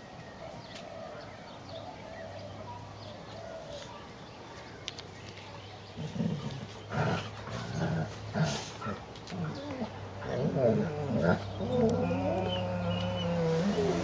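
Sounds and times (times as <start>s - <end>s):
dogs growling: 6.0s - 14.0s.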